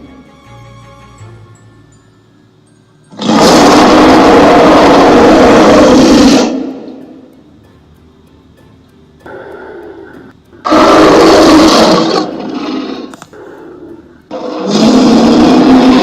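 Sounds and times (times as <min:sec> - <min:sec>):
faint music: 0:00.0 - 0:16.0
monster roar: 0:03.2 - 0:06.8, 0:10.6 - 0:13.1, 0:14.3 - 0:16.0.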